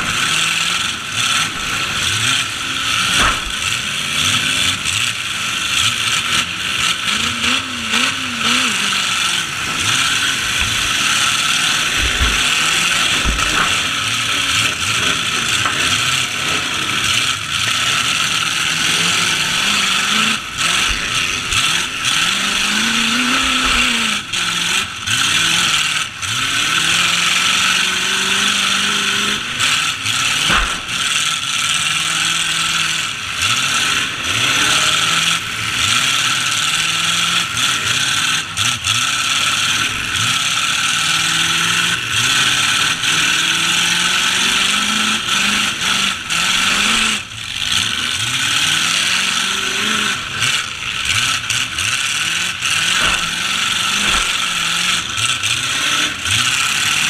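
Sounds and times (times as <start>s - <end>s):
truck engines revving: 0.0s - 57.0s
collision bangs: 1.4s - 4.0s.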